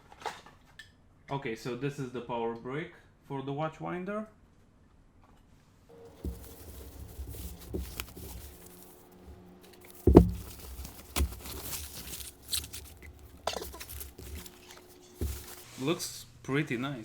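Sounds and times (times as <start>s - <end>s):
packaging rustling and crinkling: 6.1s - 15.9s
objects knocking when set down: 6.2s - 9.0s, 9.7s - 15.8s.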